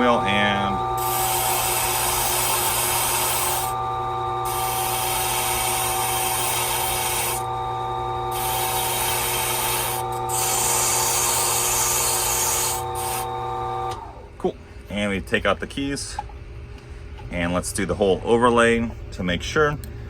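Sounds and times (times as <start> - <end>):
key rasping on buffing wheel: 0.0 - 13.3
machine motor humming: 0.0 - 14.2.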